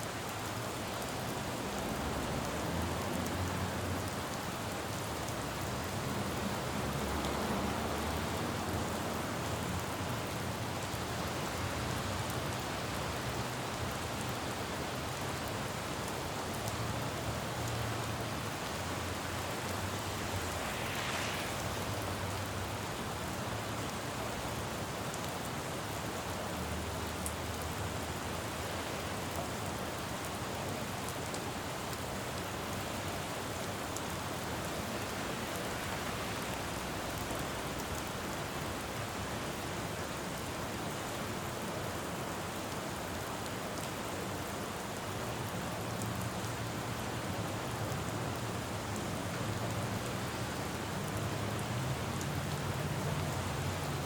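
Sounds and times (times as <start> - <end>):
rain falling on road: 0.0 - 54.0
traffic rumble: 1.0 - 24.9, 32.0 - 42.2
brief hiss: 20.3 - 22.0.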